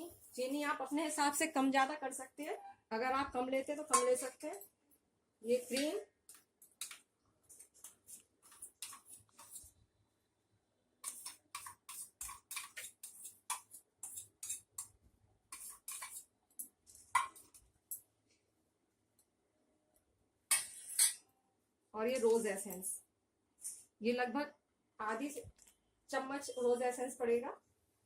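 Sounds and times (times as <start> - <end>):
spoon scraping a container: 6.8 - 9.8, 11.0 - 17.6, 20.5 - 21.2.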